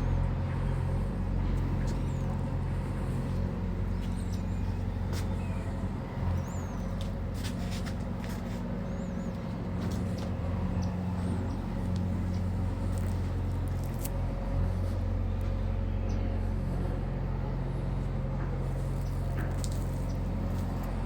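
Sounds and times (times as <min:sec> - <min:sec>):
low hum and rumble: 0:00.0 - 0:21.0
sparrow chirps: 0:03.8 - 0:07.1, 0:08.8 - 0:13.0.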